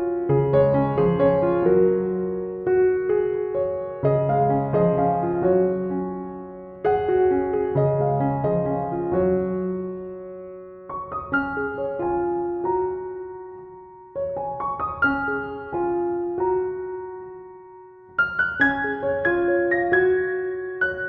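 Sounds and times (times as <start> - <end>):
gentle solo piano melody: 0.0 - 21.0.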